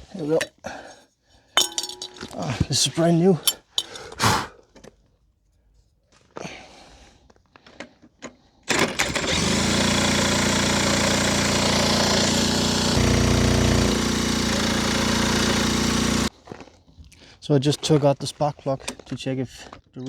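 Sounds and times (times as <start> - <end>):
moped engine running: 9.0 - 16.3.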